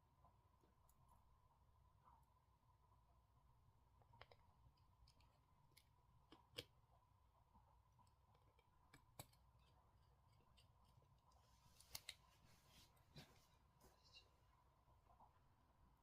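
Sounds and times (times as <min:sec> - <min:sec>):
faint clicks of small tools: 0:08.0 - 0:12.2.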